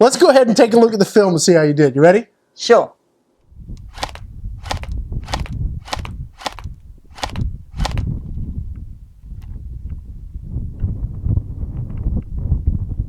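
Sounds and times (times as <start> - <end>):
airsoft rifle single shots: 3.8 - 8.1.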